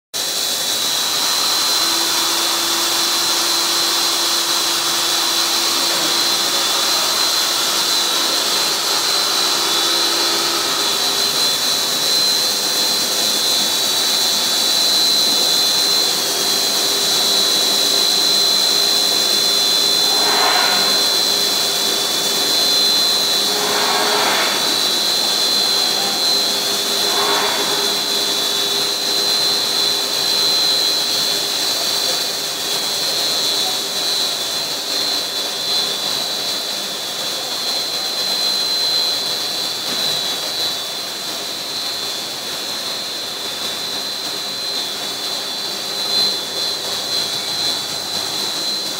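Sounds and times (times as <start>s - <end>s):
machine high whine: 0.2s - 48.9s
loud hiss of air: 19.6s - 30.0s.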